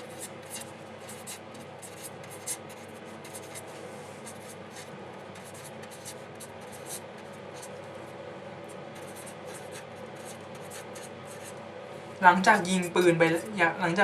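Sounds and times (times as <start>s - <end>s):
scratchy pen strokes: 0.0s - 7.8s, 9.0s - 11.6s
steady background hum: 0.0s - 14.0s.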